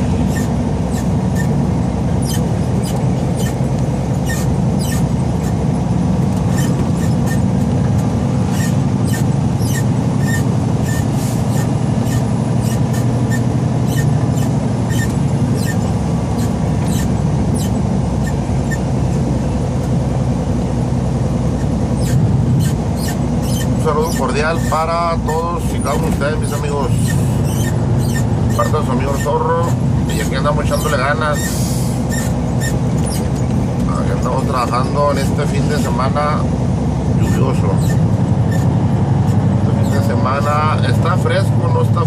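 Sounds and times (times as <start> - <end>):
engine and road noise drone: 0.0 - 42.0
short squeaks and clicks: 0.2 - 1.6, 2.2 - 3.6, 4.2 - 5.6, 6.3 - 18.9, 21.6 - 24.8, 25.9 - 33.6, 37.2 - 40.1.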